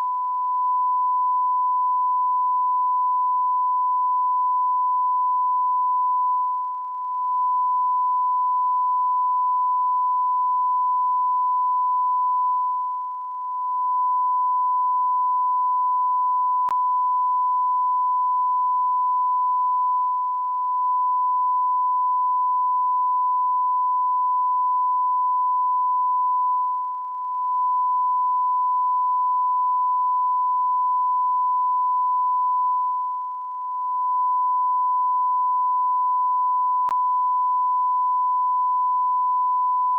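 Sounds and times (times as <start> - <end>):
continuous high-pitched electronic beep: 12.6 - 14.2, 32.7 - 34.9.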